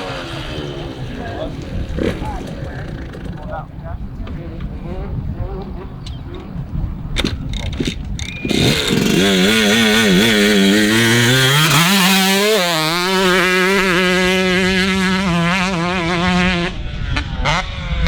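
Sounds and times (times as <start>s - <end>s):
dirt bike engine revving: 0.0s - 6.6s, 7.3s - 18.0s.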